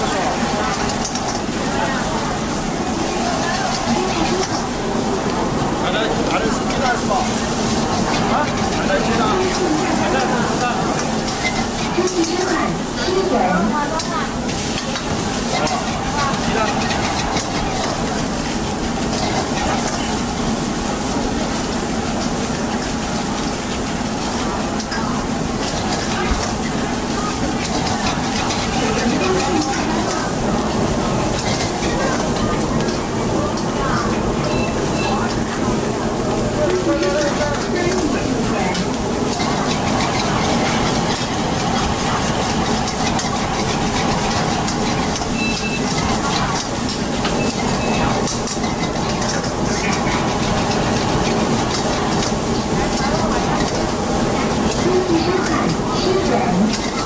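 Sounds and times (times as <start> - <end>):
food sizzling in a wok: 0.0 - 57.0
gas burner rushing: 0.0 - 57.0.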